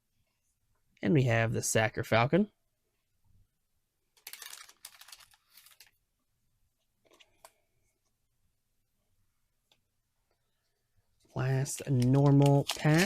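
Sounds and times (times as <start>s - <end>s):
cards rustling and sliding: 4.2s - 6.0s, 7.0s - 7.6s, 11.7s - 13.0s.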